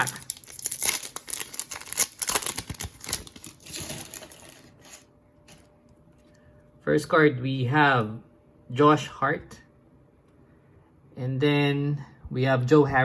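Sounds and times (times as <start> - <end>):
foil wrapper tearing and crinkling: 0.0 - 4.7.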